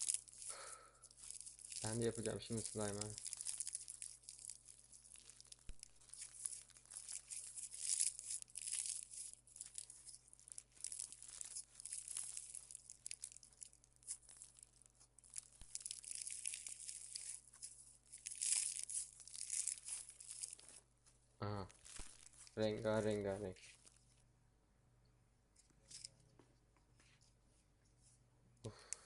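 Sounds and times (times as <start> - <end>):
slime squeezed crackling and popping: 0.0 - 20.8.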